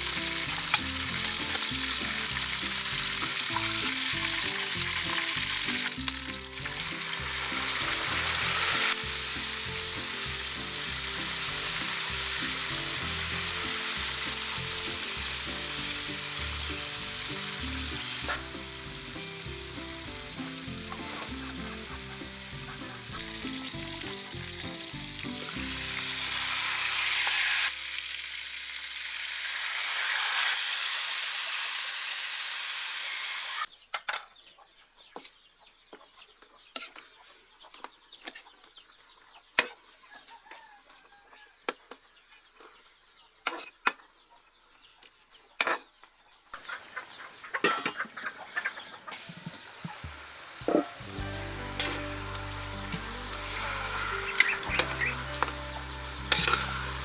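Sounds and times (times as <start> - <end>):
food sizzling in a pan: 0.0 - 33.7, 49.3 - 57.0.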